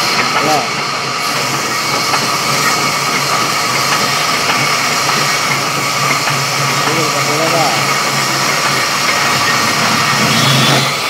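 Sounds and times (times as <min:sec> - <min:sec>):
sawmill saw machinery running: 0:00.0 - 0:11.0.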